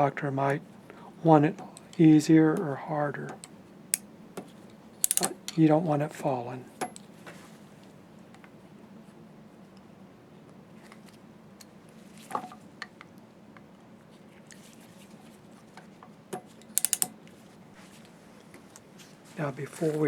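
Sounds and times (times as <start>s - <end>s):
faint steady hum: 0.0s - 20.0s
sharp clicks: 5.0s - 5.6s, 16.6s - 17.1s
small metal parts clicking: 5.0s - 5.6s, 16.6s - 17.1s.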